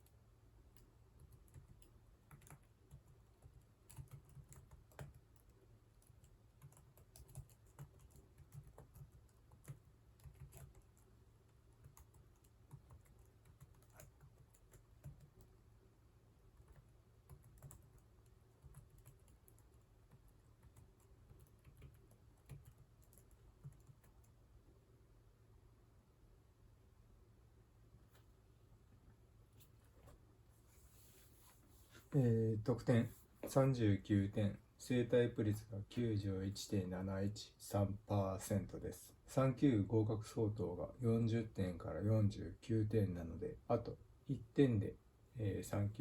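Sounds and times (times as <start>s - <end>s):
typing on computer keyboard: 0.0s - 15.6s, 16.6s - 24.4s.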